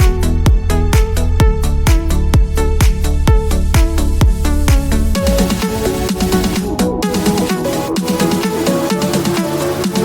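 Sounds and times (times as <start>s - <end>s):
electronic dance music: 0.0s - 10.0s.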